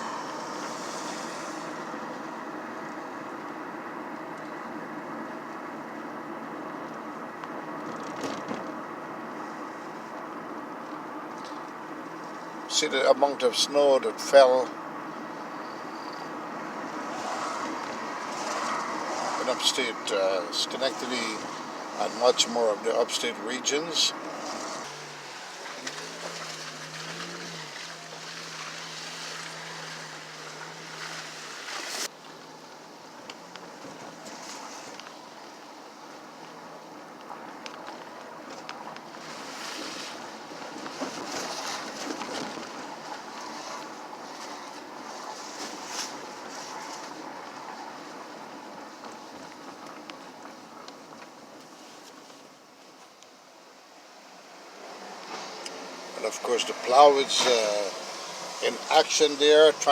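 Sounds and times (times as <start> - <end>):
tyres hissing through slush: 0.0 - 2.0
car road and engine noise: 0.0 - 59.9.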